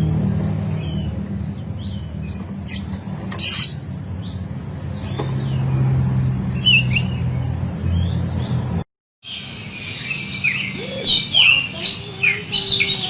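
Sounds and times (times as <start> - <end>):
low engine rumble: 0.0 - 8.8
bird chirping: 0.0 - 13.0
harsh scratchy bird call: 2.6 - 3.9.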